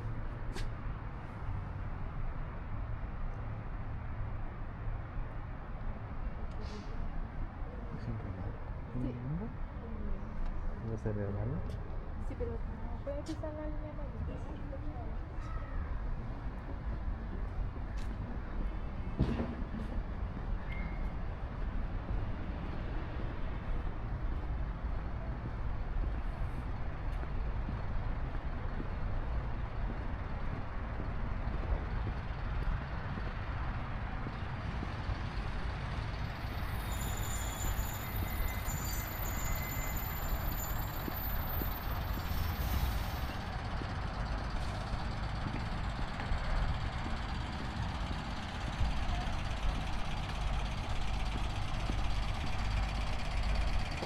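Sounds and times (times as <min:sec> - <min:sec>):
engine idling: 0:39.6 - 0:54.0.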